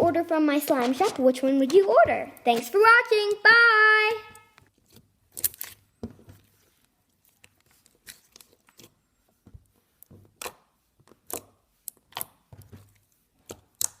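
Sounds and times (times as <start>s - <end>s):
slime squished by hand: 9.9s - 14.0s.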